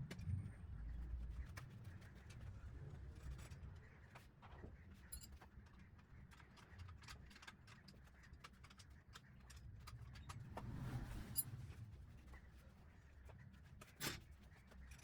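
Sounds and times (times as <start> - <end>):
small clicks and taps: 5.2 - 10.7.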